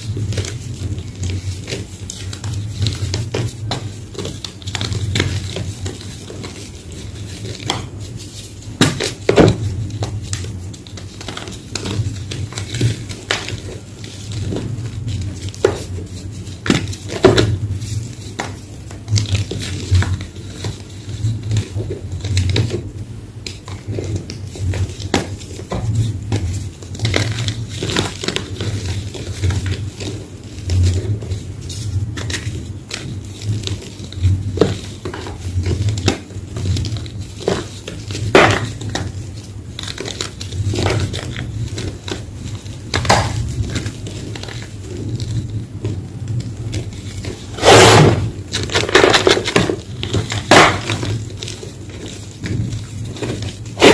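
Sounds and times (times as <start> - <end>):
chalk block crunching: 47.1 - 53.9.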